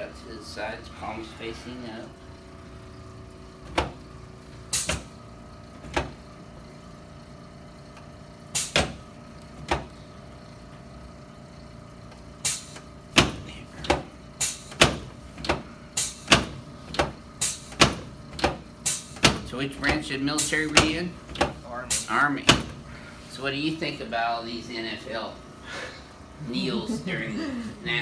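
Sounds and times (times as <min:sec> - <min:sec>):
faint steady hum: 0:00.0 - 0:28.0.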